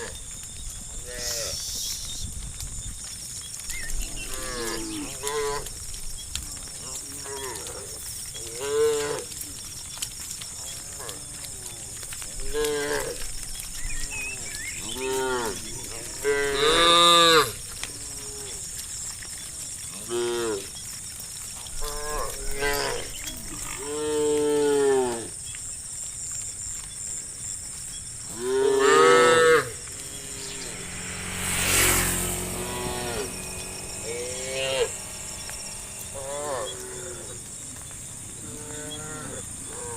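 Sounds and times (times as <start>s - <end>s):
cows mooing: 4.0s - 5.9s, 6.5s - 9.7s, 10.6s - 18.9s, 19.7s - 20.8s, 21.7s - 25.4s, 28.3s - 39.9s.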